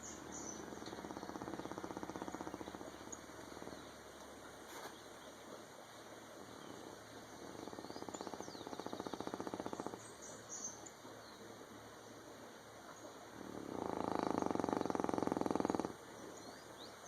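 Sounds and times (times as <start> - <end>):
fluttering snore: 0.6 - 3.8, 7.4 - 10.0, 13.4 - 16.0.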